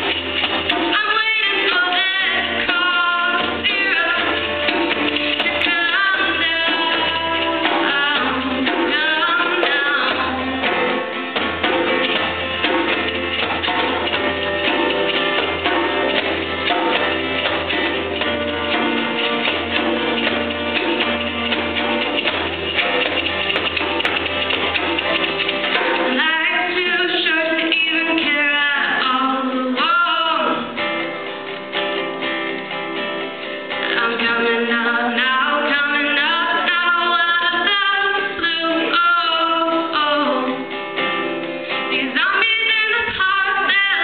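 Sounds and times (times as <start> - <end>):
live band playing rock: 0.0 - 44.0
person singing: 0.7 - 11.7, 25.8 - 31.0, 33.8 - 40.8, 41.8 - 44.0.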